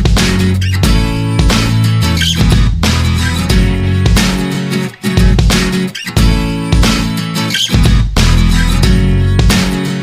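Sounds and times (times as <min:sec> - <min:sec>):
guitar-led music with bass: 0:00.0 - 0:10.0.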